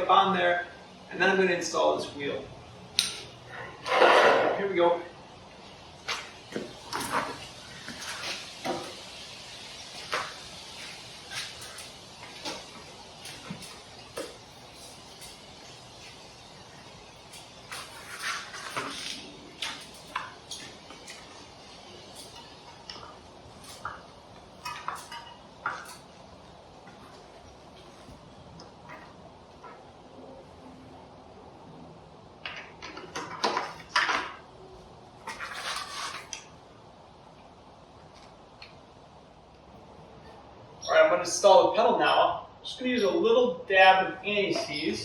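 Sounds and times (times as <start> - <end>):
steady low hiss: 0.0 - 45.0
metal bike parts clicking: 3.0 - 3.9.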